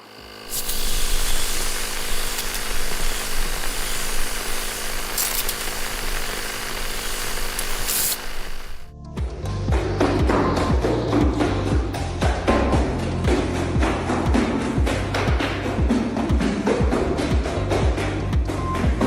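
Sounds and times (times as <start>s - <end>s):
hissing bursts: 0.0s - 8.9s
power tool running: 0.0s - 8.9s.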